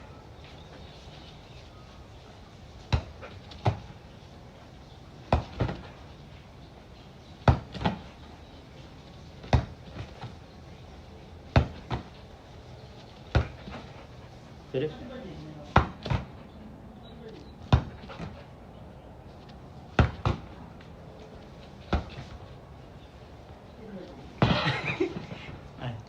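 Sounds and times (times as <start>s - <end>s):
volleyball being hit: 2.9s - 3.8s, 7.4s - 8.0s, 9.4s - 10.1s, 11.5s - 12.1s, 13.3s - 13.8s, 15.7s - 16.3s, 17.6s - 18.4s, 19.9s - 20.6s, 21.9s - 22.3s.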